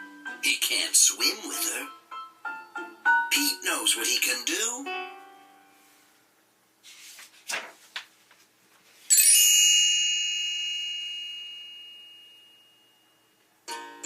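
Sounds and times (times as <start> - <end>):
bright chime ringing: 9.1 - 13.4.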